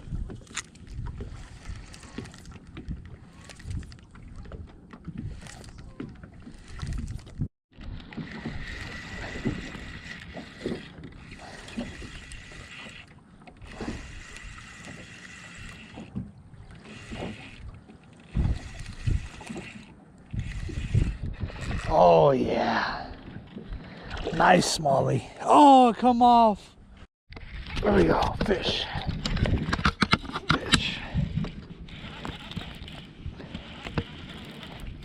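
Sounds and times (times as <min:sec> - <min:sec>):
wind rumble: 0:20.3 - 0:24.3.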